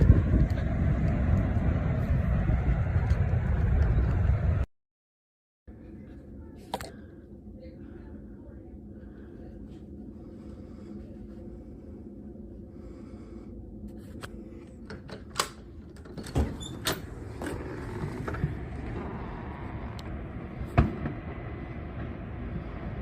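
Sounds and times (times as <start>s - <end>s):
tornado wind roaring: 0.0s - 4.6s, 15.7s - 23.0s.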